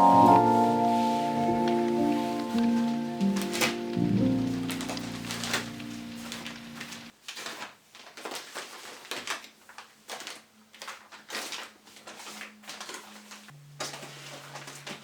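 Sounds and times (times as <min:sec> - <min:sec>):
soft swishes and rustles: 0:00.0 - 0:07.1.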